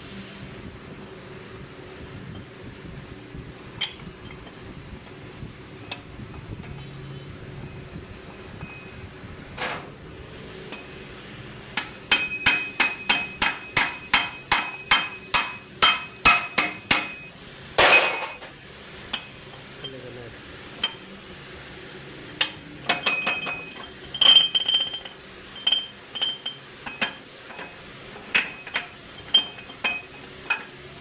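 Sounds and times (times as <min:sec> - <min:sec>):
metal clinks: 0:03.8 - 0:04.6, 0:11.8 - 0:20.0, 0:22.4 - 0:30.8
hammer striking metal: 0:11.8 - 0:18.6.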